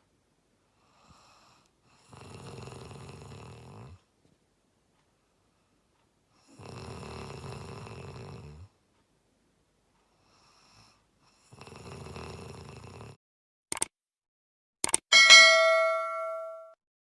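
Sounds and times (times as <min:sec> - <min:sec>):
person snoring: 0:01.0 - 0:04.0, 0:06.5 - 0:08.7, 0:10.4 - 0:13.2.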